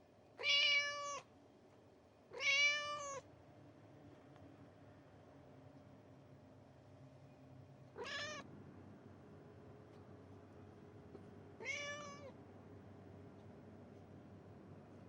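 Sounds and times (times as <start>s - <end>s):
cat meowing: 0.4s - 1.3s, 2.3s - 3.2s, 8.0s - 8.5s, 11.6s - 12.3s.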